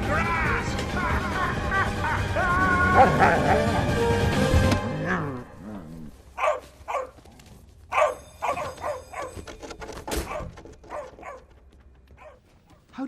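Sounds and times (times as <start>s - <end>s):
music: 0.0s - 6.0s
dog barking and yipping: 6.3s - 7.2s, 7.9s - 12.5s.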